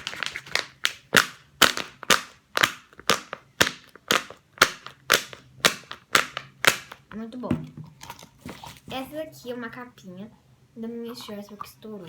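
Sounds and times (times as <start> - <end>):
fidget toy clicking pops: 0.1 - 7.2.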